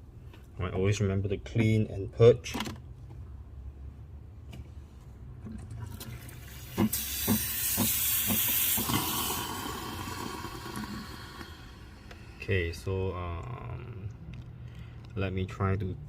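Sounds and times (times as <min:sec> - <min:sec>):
steam wand hissing: 0:06.8 - 0:12.4.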